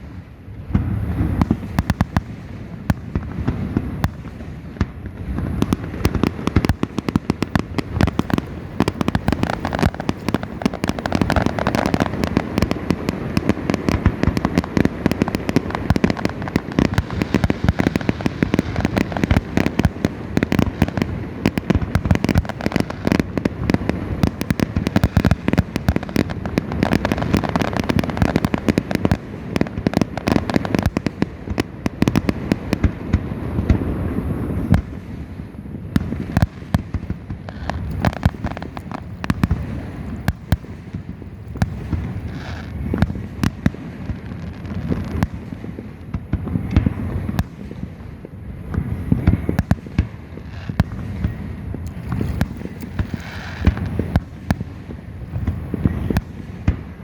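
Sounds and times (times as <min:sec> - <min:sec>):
fireworks bangs and crackles: 0:00.0 - 0:57.0.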